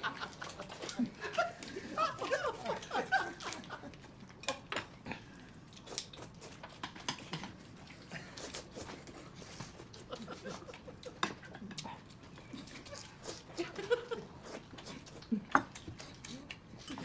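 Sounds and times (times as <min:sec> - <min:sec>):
person chewing and slurping: 0:04.8 - 0:17.0.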